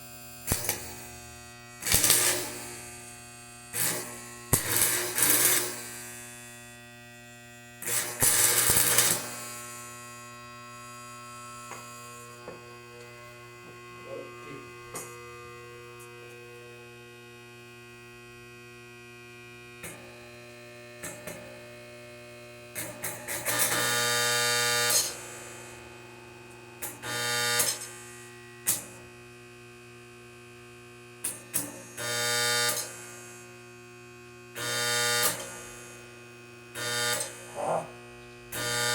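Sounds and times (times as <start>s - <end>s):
welding machine humming: 0.0s - 18.5s, 19.5s - 29.4s, 30.0s - 38.9s
welding arc crackling: 0.2s - 6.8s, 7.8s - 16.5s, 26.8s - 29.0s, 36.8s - 38.0s, 38.6s - 38.9s.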